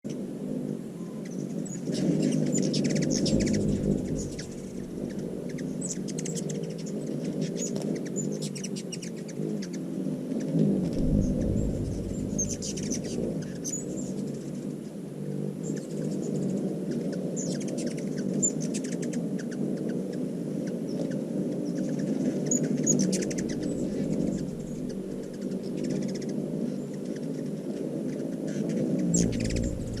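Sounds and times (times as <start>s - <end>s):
hummingbirds chattering: 1.2s - 7.4s, 11.0s - 14.2s, 22.9s - 26.3s, 29.1s - 30.0s
hummingbird wings humming: 1.3s - 7.4s, 10.8s - 14.2s, 22.9s - 26.1s, 29.1s - 30.0s
low rumbles: 3.0s - 6.2s, 10.6s - 14.6s, 23.0s - 25.8s, 29.1s - 30.0s.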